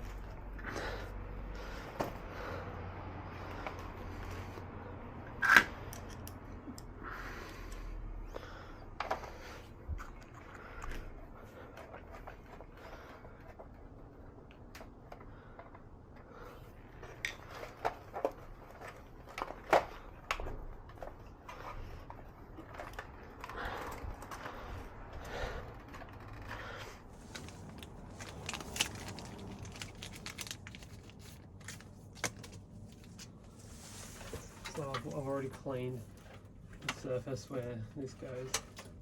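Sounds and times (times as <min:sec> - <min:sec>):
rustling: 0:26.4 - 0:36.4.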